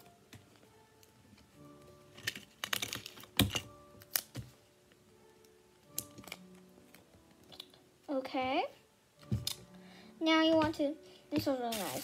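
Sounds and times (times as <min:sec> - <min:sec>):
tape and paper crackling: 0:00.0 - 0:04.5, 0:05.4 - 0:07.8, 0:11.4 - 0:12.0.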